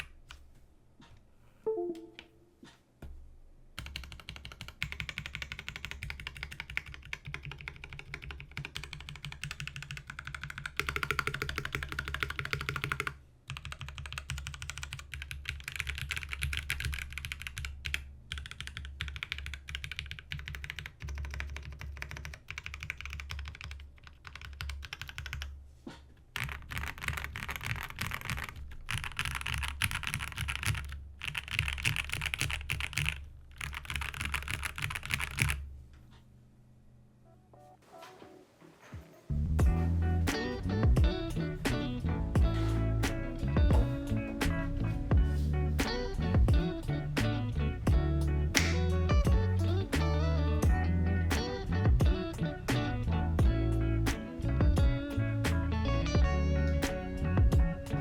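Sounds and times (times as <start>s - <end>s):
typing on mechanical keyboard: 3.8s - 25.5s, 26.4s - 35.6s.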